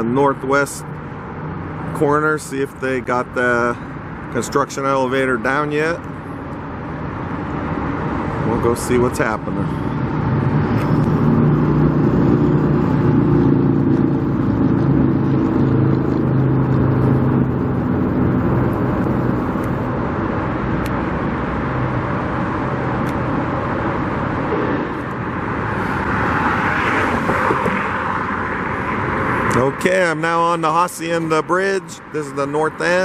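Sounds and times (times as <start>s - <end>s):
road and tyre noise: 0.0s - 33.0s
vehicle engine humming: 0.0s - 33.0s
vehicle passing: 7.4s - 31.4s.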